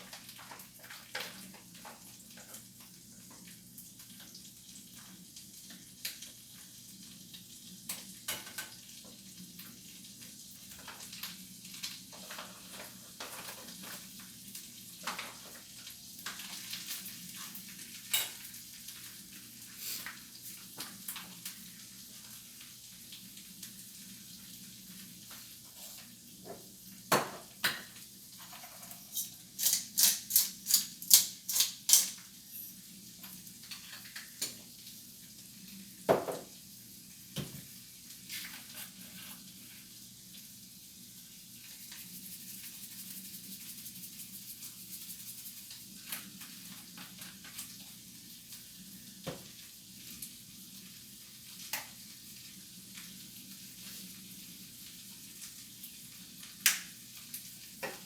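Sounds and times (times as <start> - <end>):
food sizzling in a pan: 0.0 - 58.0.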